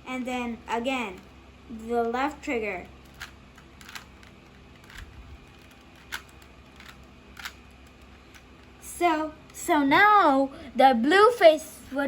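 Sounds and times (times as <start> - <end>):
puzzle cube layers clicking: 3.1 - 8.4.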